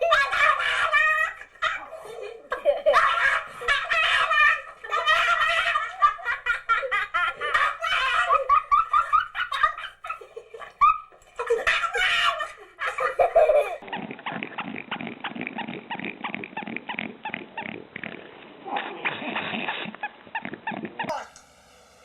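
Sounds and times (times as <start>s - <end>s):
hearty laughter: 0.0s - 17.4s.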